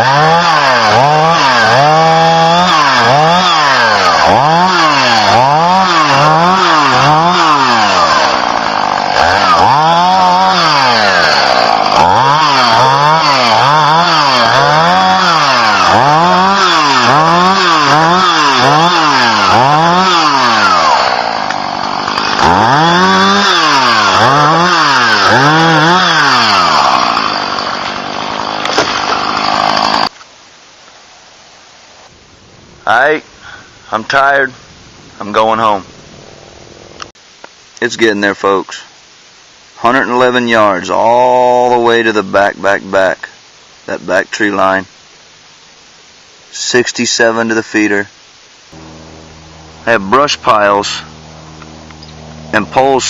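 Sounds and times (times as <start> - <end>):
chainsaw revving: 0.0 - 30.2, 48.7 - 53.0.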